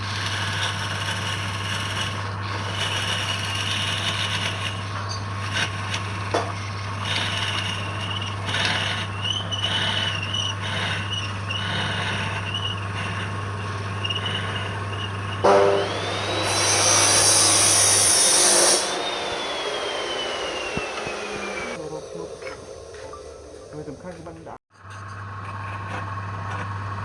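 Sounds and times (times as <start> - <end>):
turning tool squealing on wood: 0.0 - 24.1
wood lathe humming: 0.0 - 24.2
hissing machine whine: 12.8 - 24.6.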